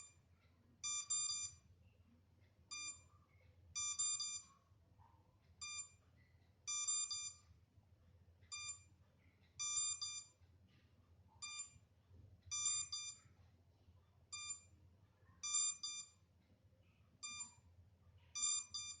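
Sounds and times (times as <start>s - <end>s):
drone warning beeps: 3.8s - 4.5s.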